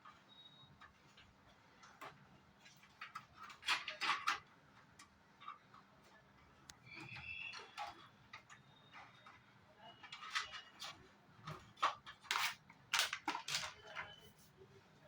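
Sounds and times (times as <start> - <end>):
cable handling clicks and rattles: 10.0 - 14.1.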